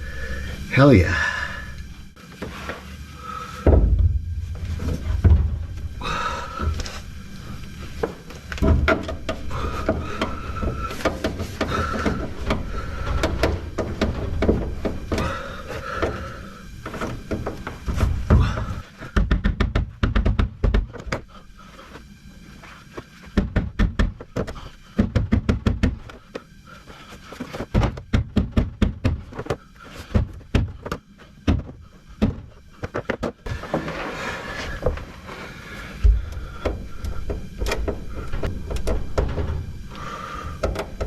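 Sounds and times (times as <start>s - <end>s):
steady hiss: 0.0s - 19.2s, 29.3s - 41.0s
music with sharp knocks: 23.3s - 26.1s, 27.7s - 29.4s.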